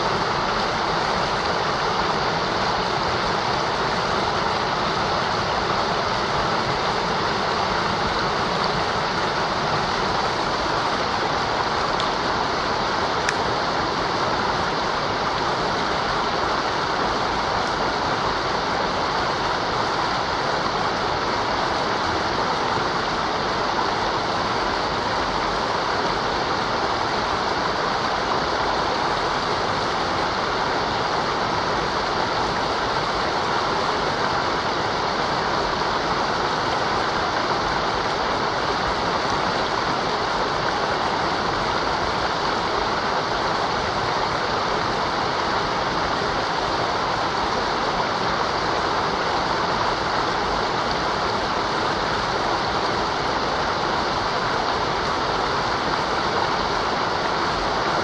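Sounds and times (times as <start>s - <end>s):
river water rushing: 0.0s - 58.0s.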